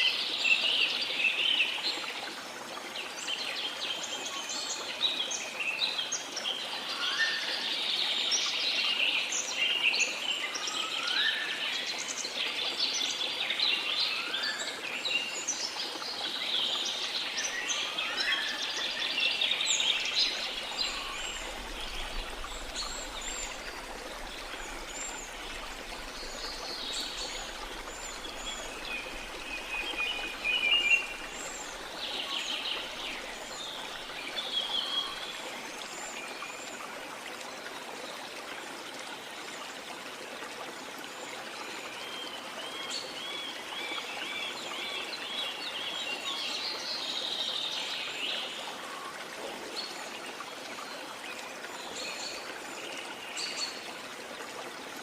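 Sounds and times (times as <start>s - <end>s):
falling water rushing: 17.3s - 36.2s
birds chirping: 19.5s - 35.2s.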